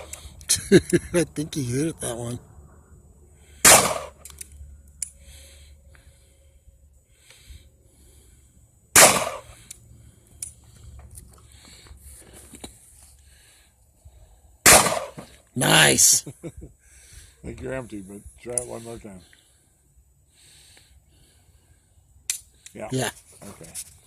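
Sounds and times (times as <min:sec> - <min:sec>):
gunshots with echo: 0:03.6 - 0:04.2, 0:09.0 - 0:09.6, 0:14.7 - 0:15.2.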